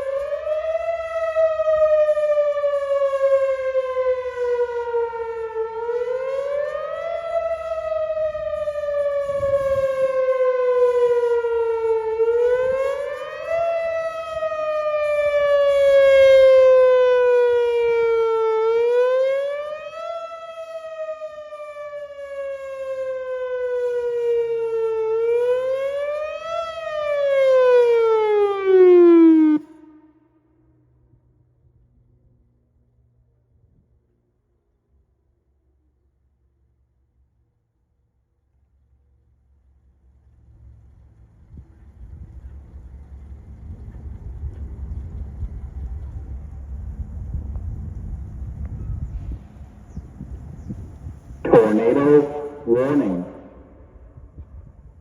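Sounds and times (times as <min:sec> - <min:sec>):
electronic warning siren: 0:00.0 - 0:30.1, 0:51.5 - 0:54.4.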